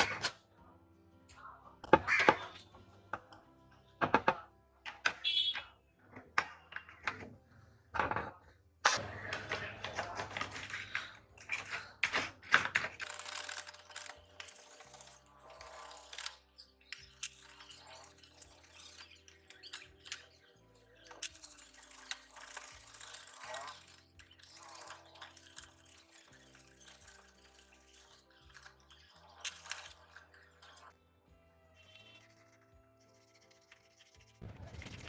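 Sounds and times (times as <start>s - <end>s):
metal scissors clicking and knocking: 12.5s - 20.4s, 21.0s - 30.9s.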